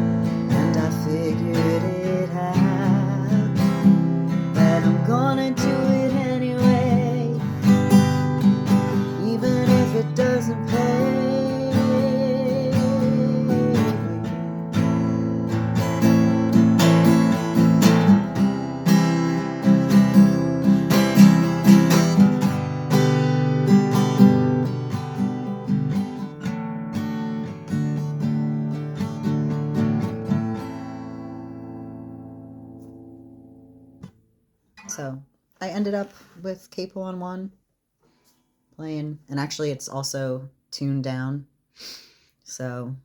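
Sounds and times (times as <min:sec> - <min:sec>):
acoustic guitar strumming: 0:00.0 - 0:34.2.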